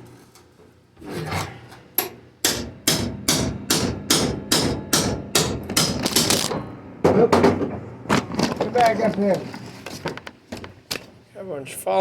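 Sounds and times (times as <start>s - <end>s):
hammer ringing on sheet steel: 2.4s - 6.8s.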